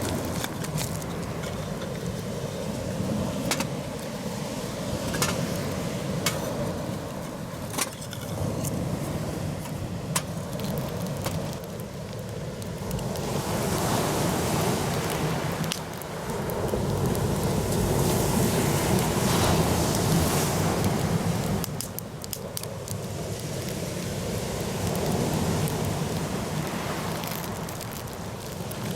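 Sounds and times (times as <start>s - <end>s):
wind: 0.0s - 28.9s.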